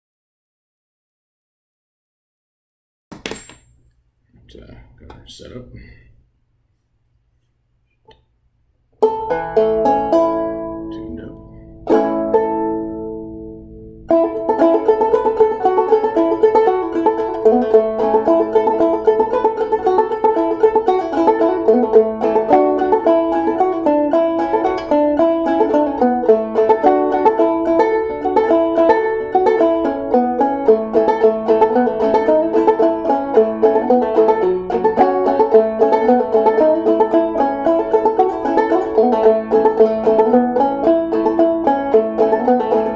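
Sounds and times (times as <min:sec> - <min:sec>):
banjo plucked notes: 0:09.0 - 0:42.9.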